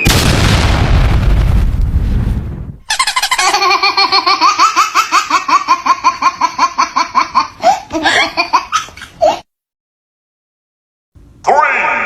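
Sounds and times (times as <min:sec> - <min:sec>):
high-pitched cartoon laughter: 0:02.9 - 0:09.4.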